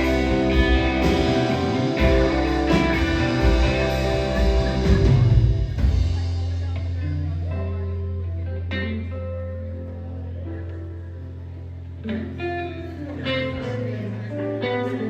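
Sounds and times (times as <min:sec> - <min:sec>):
drum and cymbal hits: 0:00.0 - 0:07.0
bass: 0:00.0 - 0:15.0
guitar chords: 0:00.0 - 0:15.0.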